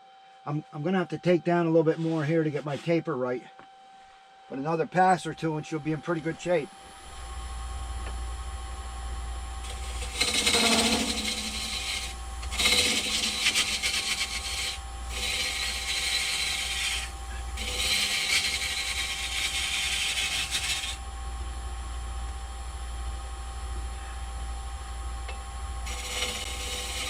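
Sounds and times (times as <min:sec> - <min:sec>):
wood lathe humming: 0:05.9 - 0:21.2, 0:25.8 - 0:27.0
gouge hissing cut on wood: 0:09.6 - 0:21.0, 0:25.8 - 0:27.0.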